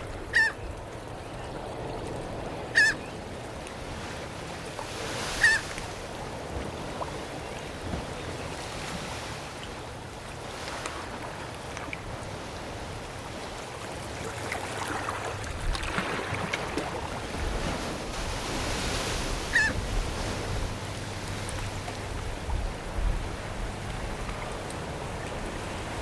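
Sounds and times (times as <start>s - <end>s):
surf washing: 0.0s - 26.0s
seagull call: 0.3s - 0.7s, 2.7s - 3.1s, 5.3s - 5.8s, 19.4s - 19.8s
low wind rumble: 14.9s - 26.0s.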